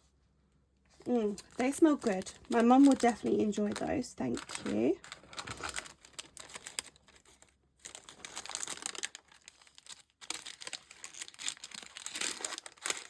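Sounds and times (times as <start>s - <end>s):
paper packaging crinkling: 0.9s - 13.0s.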